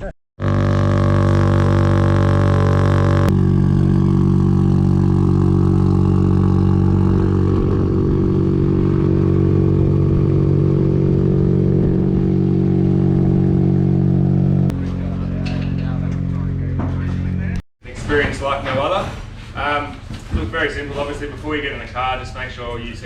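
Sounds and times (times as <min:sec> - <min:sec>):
car engine idling: 0:00.4 - 0:17.6.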